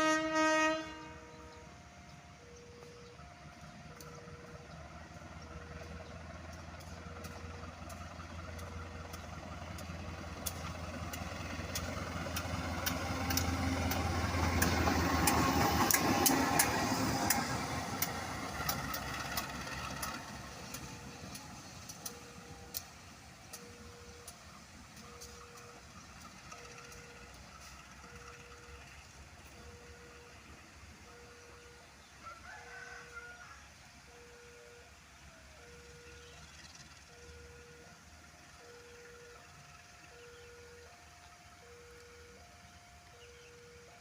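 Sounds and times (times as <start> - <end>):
diesel train engine drone: 0.0 - 44.0
train wheels clicking over rail joints: 2.1 - 32.0.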